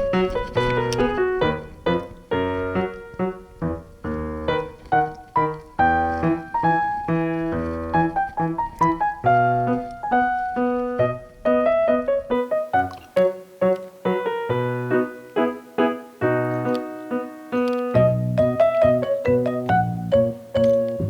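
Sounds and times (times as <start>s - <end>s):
bouncy piano music: 0.0s - 21.0s.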